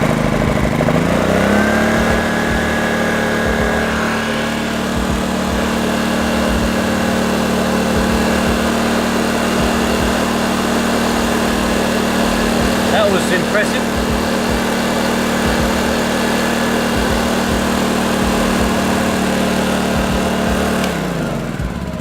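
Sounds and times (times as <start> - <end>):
petrol generator engine running: 0.0 - 22.0.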